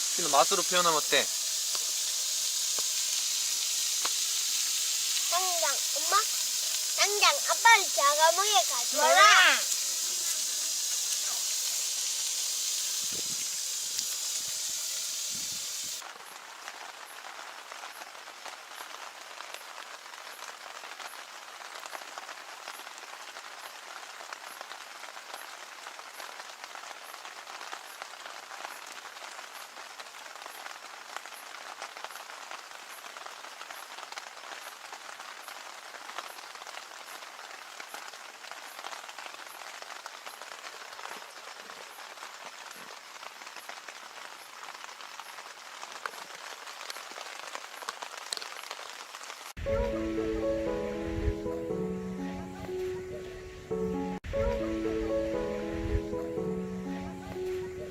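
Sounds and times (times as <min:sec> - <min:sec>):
steady rain falling: 0:00.0 - 0:57.9.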